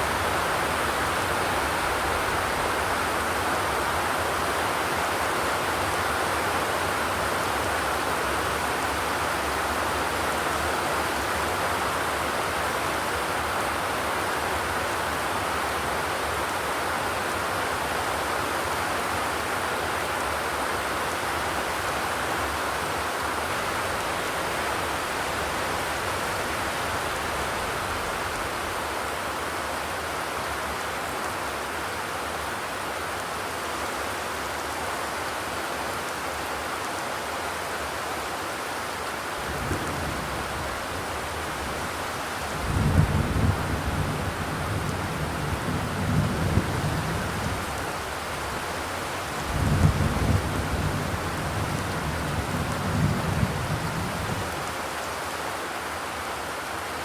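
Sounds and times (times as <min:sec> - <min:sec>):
rain on a metal roof: 0:00.0 - 0:57.0.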